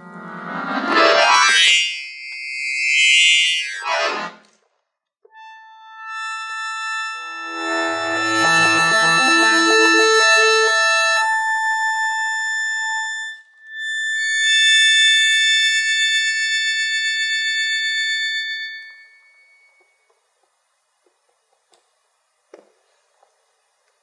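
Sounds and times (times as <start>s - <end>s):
accordion playing: 0.0s - 1.4s, 5.3s - 13.2s.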